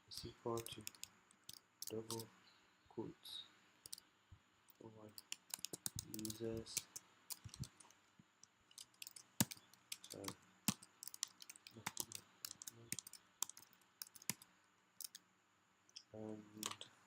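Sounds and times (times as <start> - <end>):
keyboard typing: 0.0 - 2.3, 4.7 - 7.9, 8.7 - 15.2, 16.6 - 16.8.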